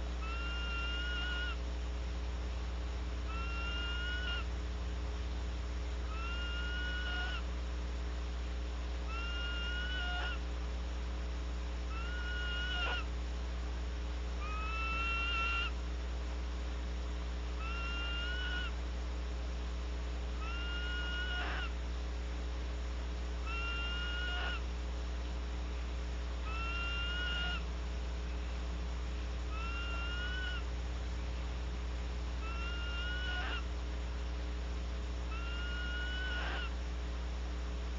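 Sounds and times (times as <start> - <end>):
low electrical hum: 0.0 - 37.9
barn owl screeching call: 0.2 - 1.6, 3.3 - 4.5, 6.0 - 7.5, 9.0 - 10.4, 11.9 - 13.1, 14.4 - 15.8, 17.6 - 18.8, 20.4 - 21.8, 23.4 - 24.7, 26.4 - 27.7, 29.5 - 30.7, 32.4 - 33.7, 35.3 - 36.8.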